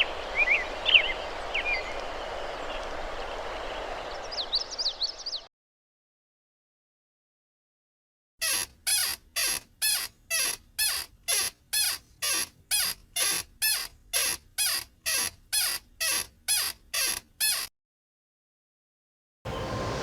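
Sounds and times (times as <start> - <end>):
short squeaky chirps: 8.4 - 17.7.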